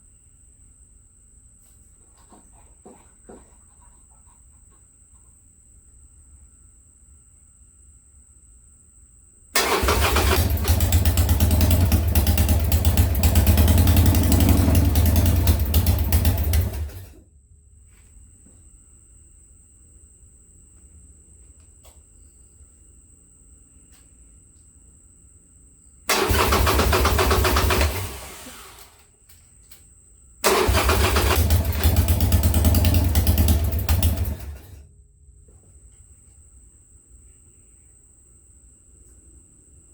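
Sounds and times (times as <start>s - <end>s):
motorcycle engine starting and running: 9.6s - 17.2s, 26.1s - 29.0s, 30.4s - 34.8s.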